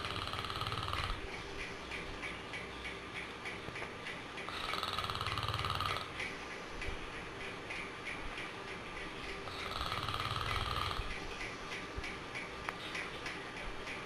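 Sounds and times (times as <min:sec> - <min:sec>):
rattling snores: 0:00.0 - 0:01.3, 0:04.4 - 0:06.3, 0:09.4 - 0:11.2.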